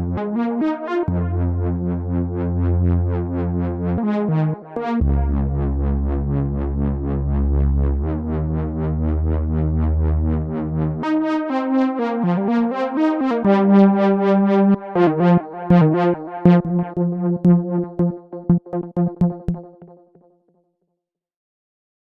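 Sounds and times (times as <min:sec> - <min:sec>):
sustained synth bass notes: 0:01.1 - 0:11.0, 0:14.4 - 0:20.0
synthesizer arpeggio: 0:14.2 - 0:20.0.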